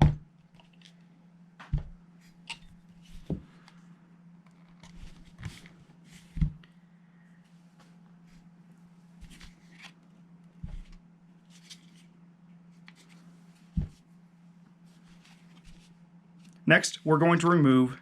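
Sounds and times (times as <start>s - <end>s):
loud knock on workbench: 0.0s - 0.2s.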